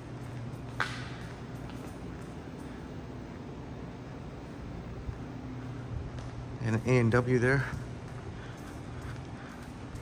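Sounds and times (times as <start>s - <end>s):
low hum and hiss: 0.0s - 10.0s.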